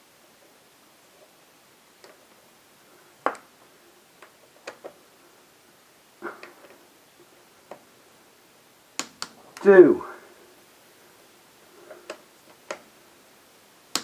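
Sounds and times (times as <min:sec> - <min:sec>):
hand tools clicking and tapping: 0:09.0 - 0:09.6.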